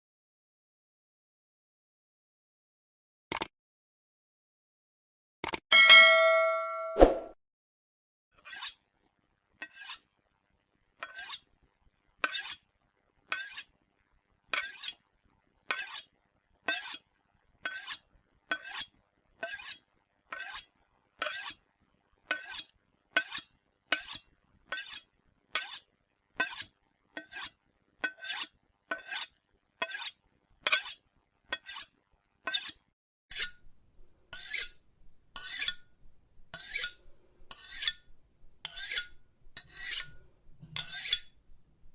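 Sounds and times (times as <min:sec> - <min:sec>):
knife scraping on sharpener: 0:08.4 - 0:08.9, 0:09.6 - 0:10.2, 0:11.0 - 0:11.6, 0:12.2 - 0:12.7, 0:13.3 - 0:13.8, 0:14.6 - 0:15.1, 0:15.7 - 0:16.1, 0:16.7 - 0:21.7, 0:22.3 - 0:33.6, 0:34.3 - 0:34.8, 0:35.4 - 0:35.9, 0:36.5 - 0:41.4.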